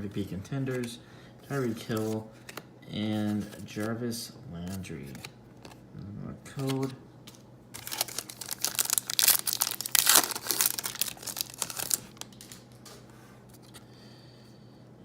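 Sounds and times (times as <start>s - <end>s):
wrapper tearing and crinkling: 7.8s - 12.6s.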